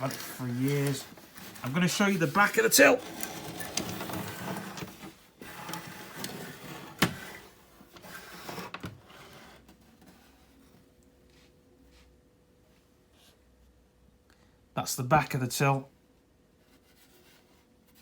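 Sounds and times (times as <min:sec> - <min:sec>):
plastic toy scraping on surface: 0:00.0 - 0:10.3.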